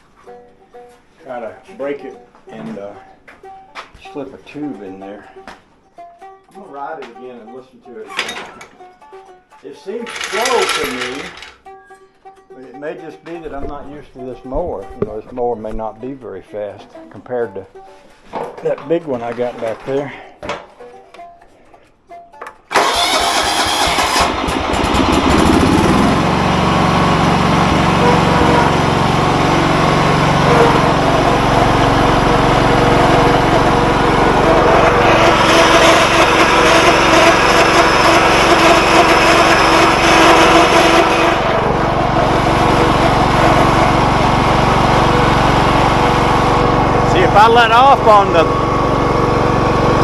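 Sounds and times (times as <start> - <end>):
riding lawn mower engine: 10.0 - 11.6, 22.7 - 50.0
high mechanical whine: 24.8 - 50.0.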